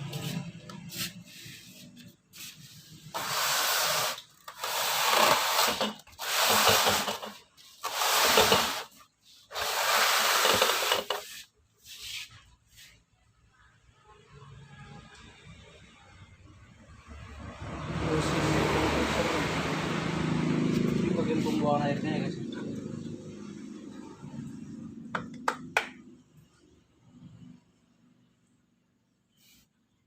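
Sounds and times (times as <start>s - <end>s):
rubbing or scraping strokes: 0.0s - 13.1s.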